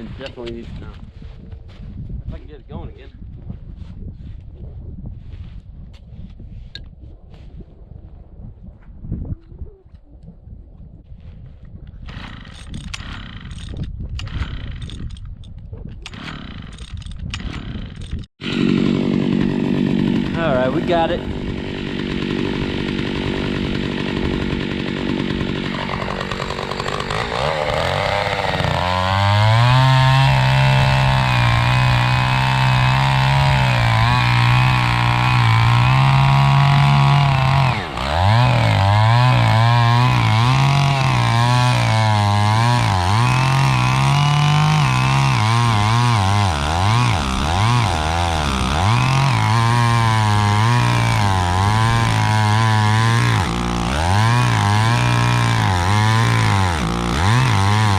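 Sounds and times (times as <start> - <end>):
chainsaw engine revving: 12.1 - 13.7, 16.1 - 57.9.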